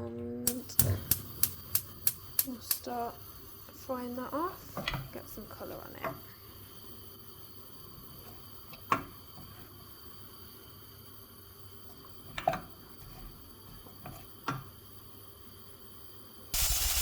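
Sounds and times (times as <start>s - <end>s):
faint steady hiss: 0.3s - 17.0s
vegetables stirred in hot oil: 16.6s - 17.0s.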